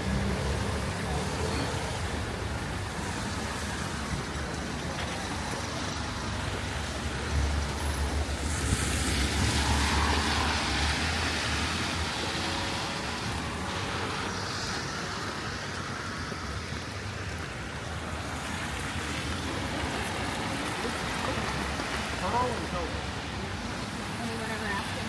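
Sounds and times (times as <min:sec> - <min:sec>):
traffic on wet street: 0:00.0 - 0:25.0
rain hissing: 0:00.1 - 0:24.7.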